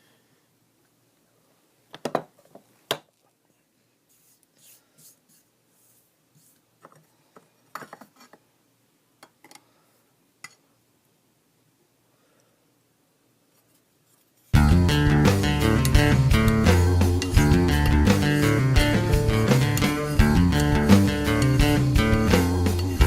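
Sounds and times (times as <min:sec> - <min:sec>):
faint rubbing: 0:03.9 - 0:07.1.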